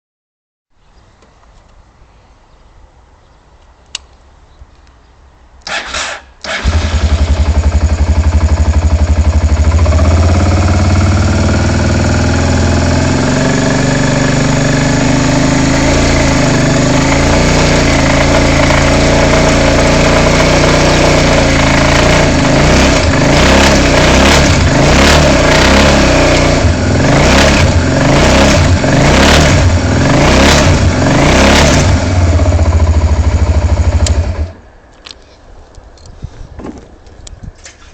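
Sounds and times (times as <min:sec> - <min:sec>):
motorcycle starter cranking: 0:05.6 - 0:08.3
motorcycle engine revving: 0:05.7 - 0:34.6
motorcycle engine idling: 0:06.6 - 0:23.3, 0:31.8 - 0:34.6.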